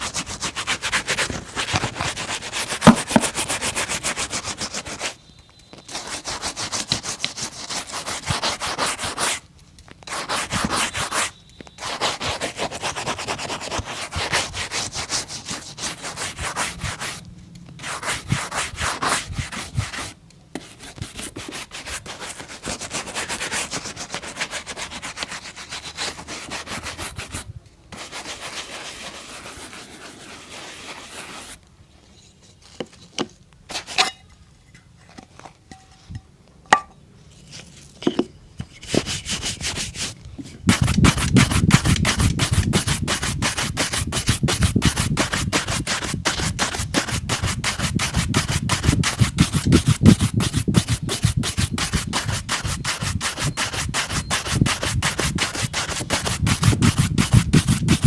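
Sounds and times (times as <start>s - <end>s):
brush scrubbing boot: 0.0s - 5.0s, 28.0s - 31.6s, 38.8s - 58.0s
quiet handling and knocks: 32.0s - 38.8s.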